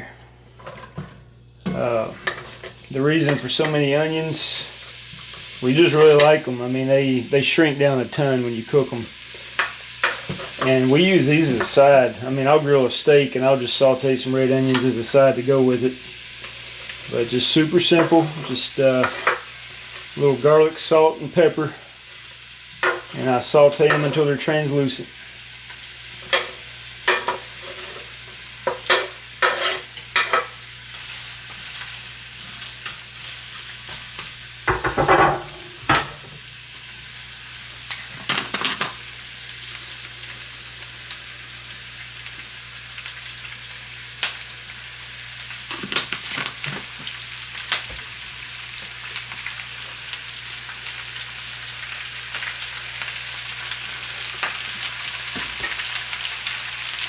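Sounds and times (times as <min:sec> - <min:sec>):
onions sizzling in oil: 0:00.0 - 0:57.0
utensil scraping a pan: 0:17.9 - 0:20.1, 0:26.2 - 0:33.3.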